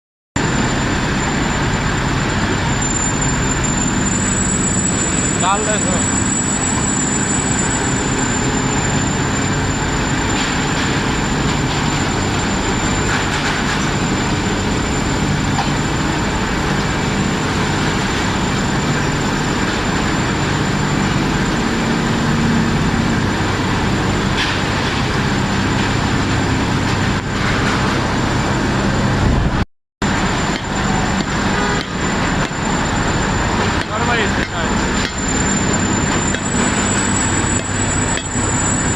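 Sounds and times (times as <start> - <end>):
industrial machinery rumble: 0.4 - 38.9
thin high whine: 0.4 - 38.9.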